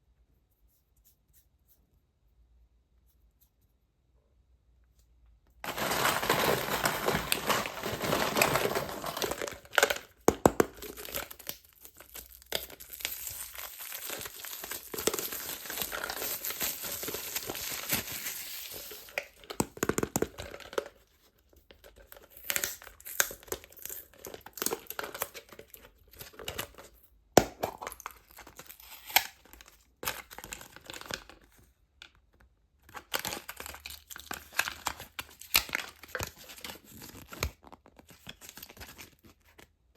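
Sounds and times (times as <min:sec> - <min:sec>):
packaging crinkling and tearing: 0:05.6 - 0:21.0, 0:27.6 - 0:31.6, 0:32.9 - 0:39.7.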